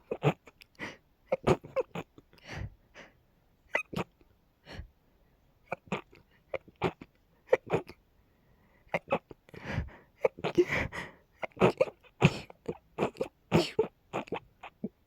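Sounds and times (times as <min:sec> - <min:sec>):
breathy gasps: 0:02.4 - 0:03.2, 0:08.3 - 0:11.4.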